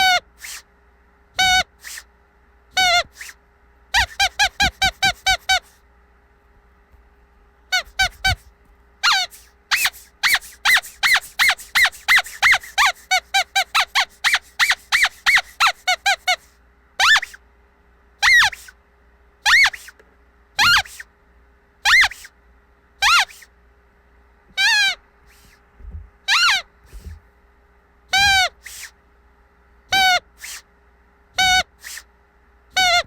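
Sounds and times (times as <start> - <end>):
squeaky dog toy squeaking: 0.0 - 0.6, 1.4 - 2.1, 2.7 - 5.8, 7.7 - 8.4, 9.0 - 17.4, 18.2 - 18.8, 19.4 - 20.0, 20.6 - 21.1, 21.8 - 22.3, 23.0 - 23.5, 24.5 - 25.6, 26.2 - 27.2, 28.1 - 29.0, 29.9 - 30.6, 31.4 - 32.1, 32.7 - 33.0.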